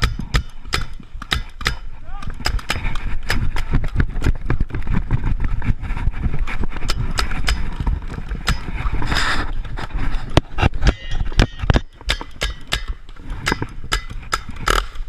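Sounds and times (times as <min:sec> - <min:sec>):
paintball markers firing: 0:00.0 - 0:04.6, 0:11.5 - 0:15.0.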